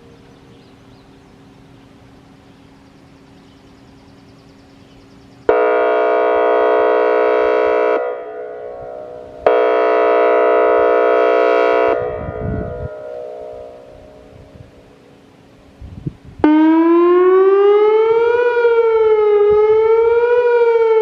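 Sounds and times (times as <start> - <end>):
electronic siren blasts: 16.4 - 21.0.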